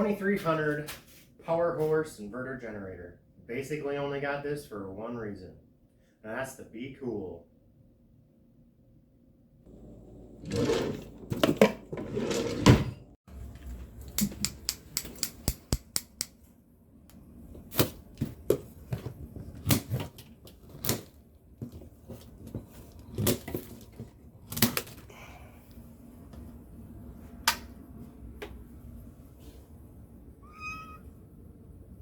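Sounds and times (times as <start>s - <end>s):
scraping and knocking: 10.4s - 13.2s
sharp clicks and knocks: 14.0s - 16.4s.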